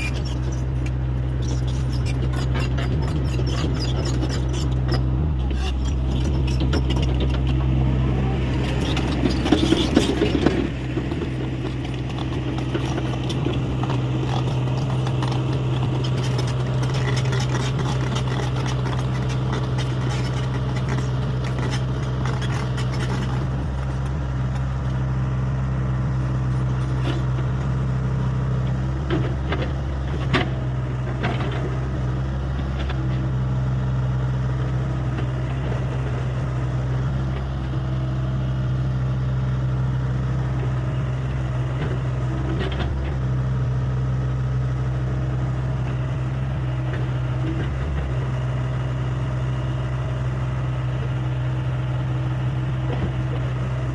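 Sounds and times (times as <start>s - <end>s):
scraping clatter: 0.0s - 24.8s
excavator diesel engine running: 0.0s - 53.9s.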